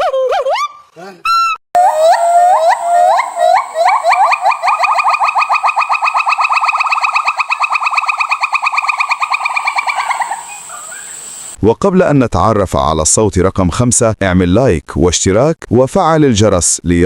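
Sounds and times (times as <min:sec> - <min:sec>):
animal trilling call: 0:01.3 - 0:11.6.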